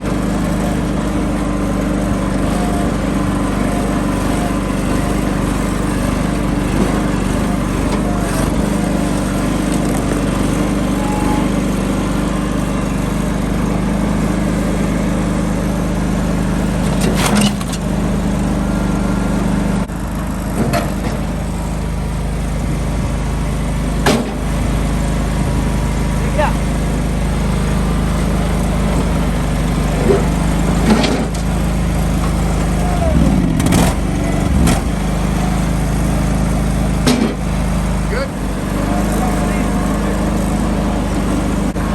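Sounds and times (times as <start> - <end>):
engine droning: 0.0 - 41.9
sharp knocks: 37.0 - 37.4.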